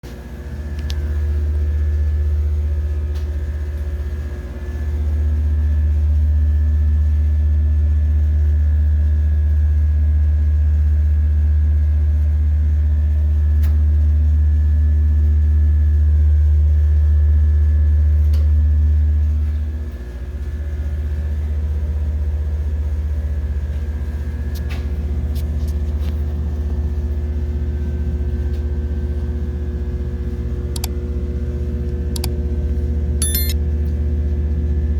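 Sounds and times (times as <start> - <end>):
elevator machinery hum: 29.8 - 33.6.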